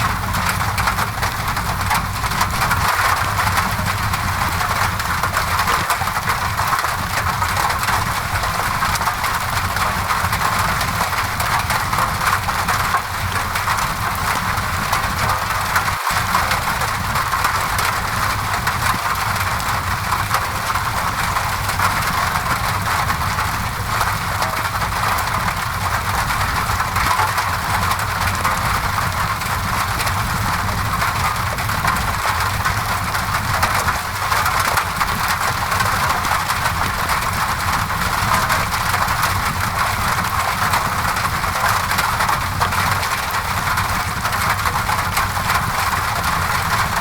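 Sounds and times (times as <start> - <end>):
rain on a window: 0.0 - 47.0.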